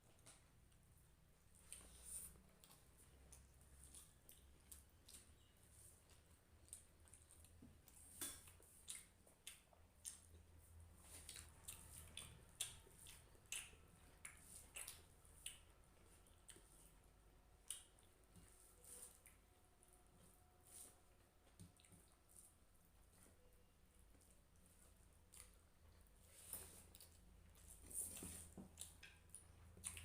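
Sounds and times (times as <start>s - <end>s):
wet chewing smacks: 6.1s - 19.5s, 28.1s - 30.0s.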